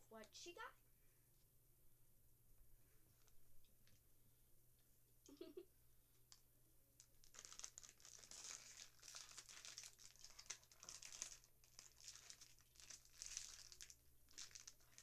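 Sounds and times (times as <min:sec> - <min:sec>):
plastic packaging crinkling: 0:07.0 - 0:15.0.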